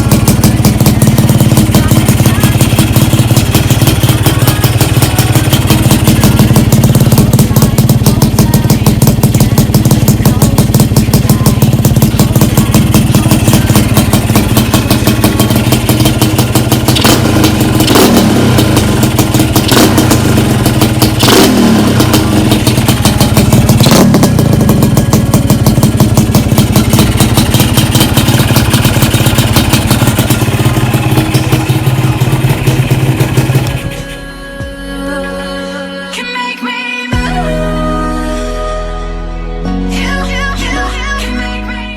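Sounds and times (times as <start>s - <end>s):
motorcycle engine idling and revving: 0.0s - 35.2s.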